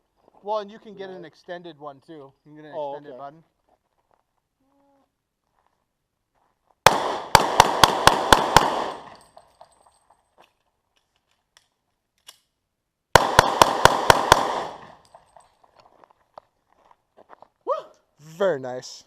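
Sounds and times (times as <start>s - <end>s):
pistol shots with echo: 6.9s - 9.2s, 13.1s - 15.0s.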